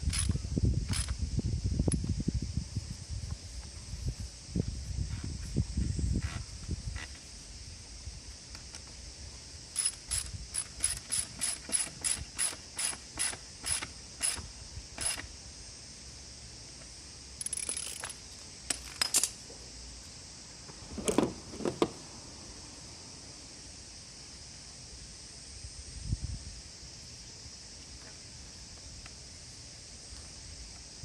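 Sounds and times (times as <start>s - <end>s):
ratchet wrench clicking: 9.8s - 15.2s, 17.4s - 19.4s.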